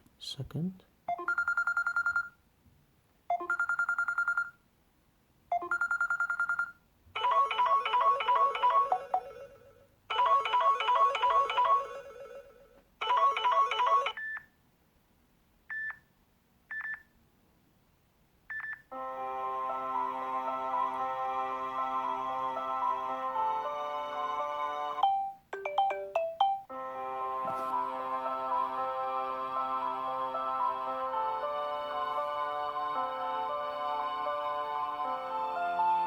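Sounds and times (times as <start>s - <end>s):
melodic phone ringtone: 1.1s - 2.3s, 3.3s - 4.5s, 5.5s - 14.4s, 25.0s - 27.7s
buzzy electronic trill ringtone: 7.2s - 14.2s.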